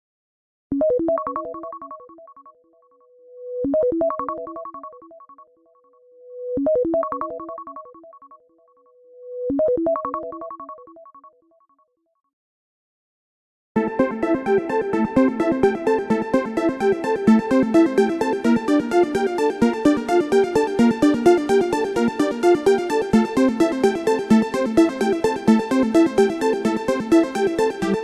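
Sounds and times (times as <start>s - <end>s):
synthesized alarm melody: 13.8s - 28.0s.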